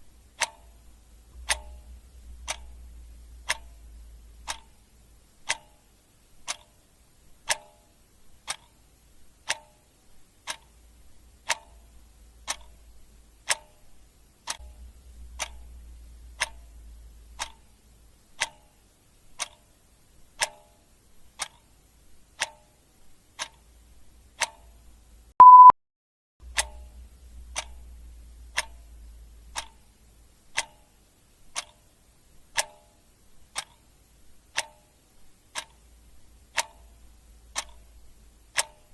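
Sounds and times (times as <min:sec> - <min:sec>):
clock ticking: 0:00.0 - 0:25.7, 0:26.4 - 0:38.9
short loud beep: 0:25.4 - 0:25.8.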